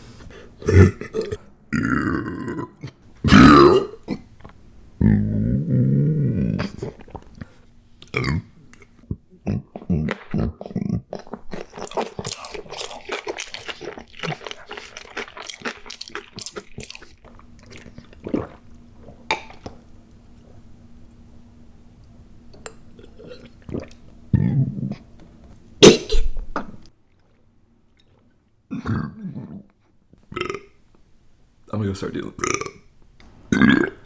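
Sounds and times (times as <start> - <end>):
close-up crunching: 11.1 - 19.7.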